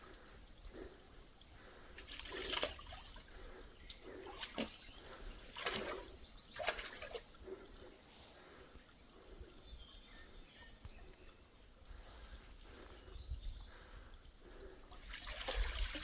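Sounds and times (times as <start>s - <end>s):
water splashing: 0.0s - 8.6s, 14.6s - 16.0s
faint water trickle: 0.0s - 16.0s.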